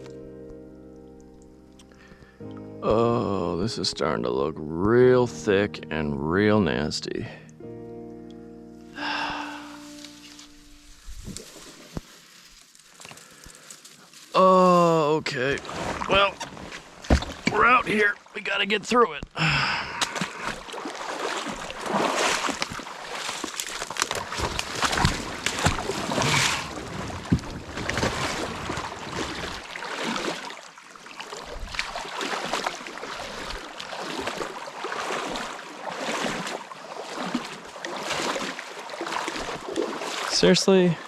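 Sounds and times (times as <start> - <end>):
kayak splashing through water: 9.0 - 18.6, 19.8 - 41.0.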